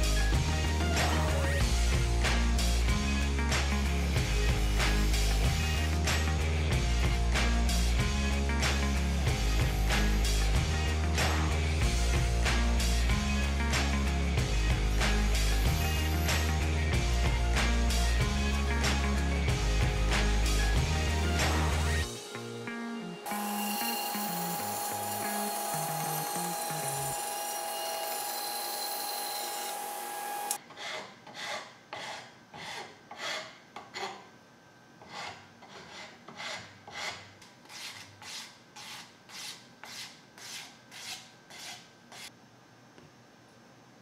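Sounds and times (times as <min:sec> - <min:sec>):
power tool whining: 0:23.2 - 0:30.6
hand strokes scraping wood: 0:35.0 - 0:42.3.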